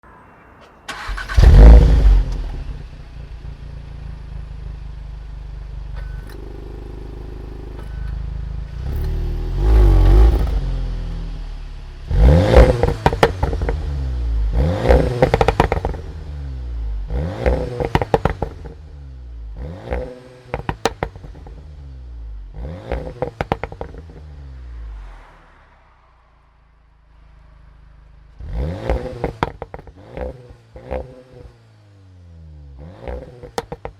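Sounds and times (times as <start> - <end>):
car engine starting and revving: 0.9 - 4.8, 5.5 - 26.2, 27.7 - 33.9
exhaust crackles and pops: 15.0 - 16.1, 22.8 - 24.2.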